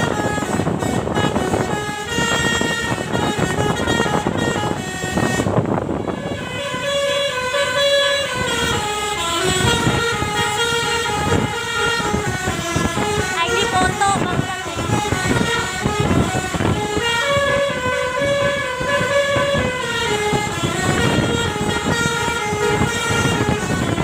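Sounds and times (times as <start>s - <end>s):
musical bus horn melody: 0.0s - 24.0s.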